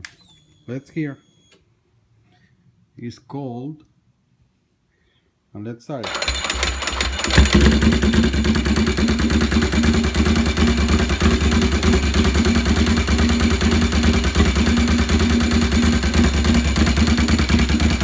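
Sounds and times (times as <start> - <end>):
motorcycle engine fast-idling: 6.0 - 18.0.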